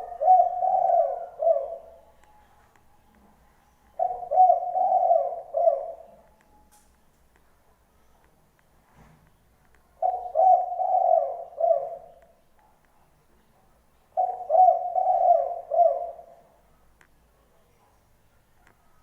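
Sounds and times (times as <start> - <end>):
dove cooing: 0.0 - 2.2, 4.0 - 6.2, 10.0 - 12.4, 14.2 - 16.5.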